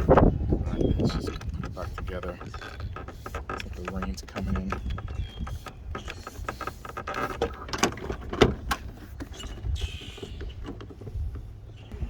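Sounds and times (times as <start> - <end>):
plastic clicks and rattles: 0.8 - 9.4.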